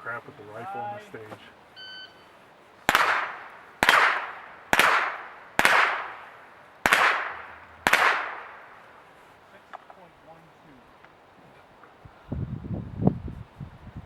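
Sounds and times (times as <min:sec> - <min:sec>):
rifle shots with echo: 0:02.8 - 0:09.0.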